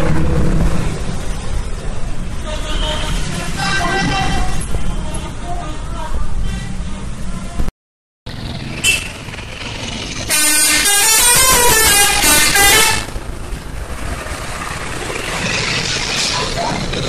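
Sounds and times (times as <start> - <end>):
street and traffic noise: 0.0 - 7.7, 8.3 - 17.0
multi-tone musical air horn: 10.3 - 13.1.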